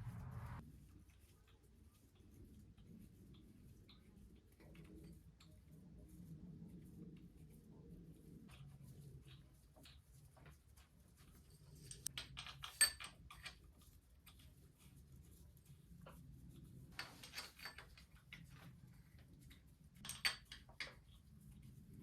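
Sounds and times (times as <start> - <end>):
low steady hum: 0.0 - 0.6
metal tools clinking and rattling: 17.0 - 18.0.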